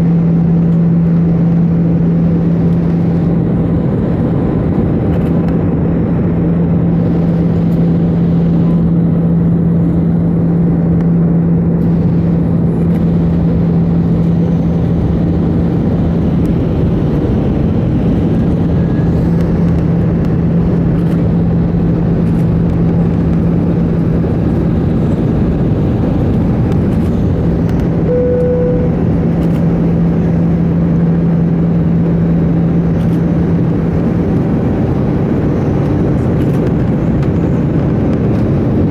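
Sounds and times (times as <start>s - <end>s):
jet engines humming: 0.0s - 38.9s
low drone: 0.0s - 38.9s
single tone: 28.1s - 29.7s.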